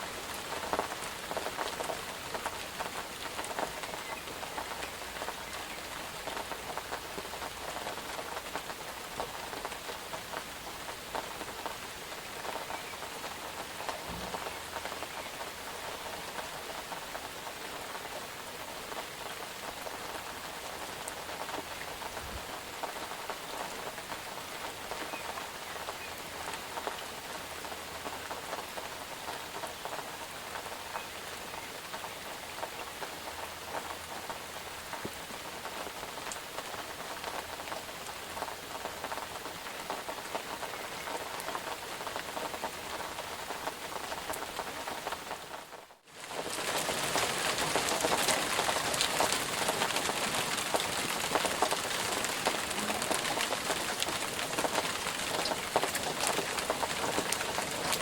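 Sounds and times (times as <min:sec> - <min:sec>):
rain pattering: 0:00.0 - 0:58.0
faint low thuds: 0:14.0 - 0:14.5.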